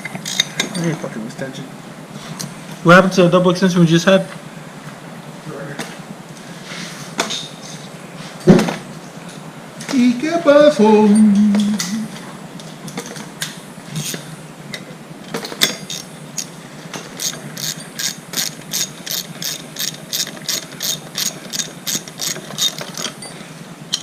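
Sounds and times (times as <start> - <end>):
socket ratchet clicking: 15.9 - 16.5, 17.2 - 23.1.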